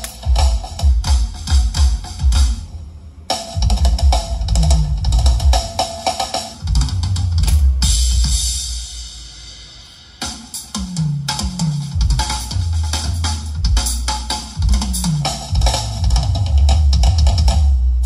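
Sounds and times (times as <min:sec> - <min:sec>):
music with drums and heavy bass: 0:00.0 - 0:18.0.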